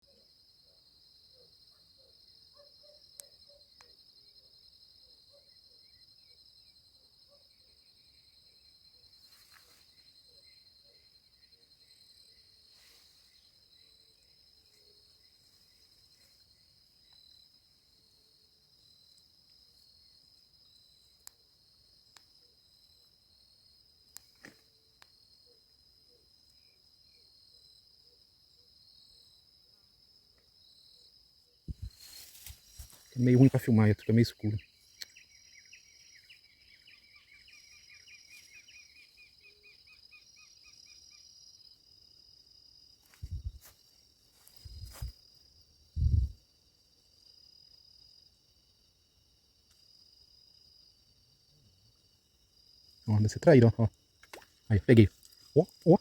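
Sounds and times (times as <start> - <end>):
crickets trilling: 0.0 - 56.0
faint lower chirps: 8.9 - 17.2.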